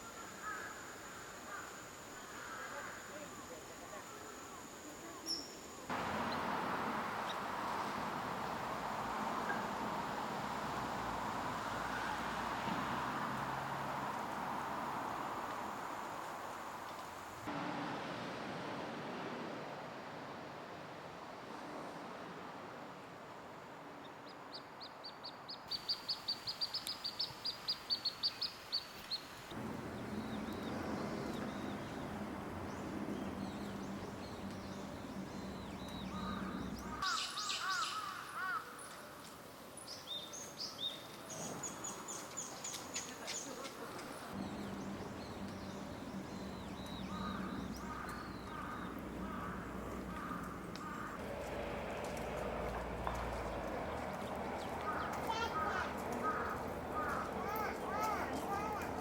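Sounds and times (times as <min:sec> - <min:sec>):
outdoor background noise: 0:00.0 - 0:59.0
birds chirping and calling: 0:29.6 - 0:38.2, 0:42.1 - 0:51.2, 0:54.2 - 0:59.0.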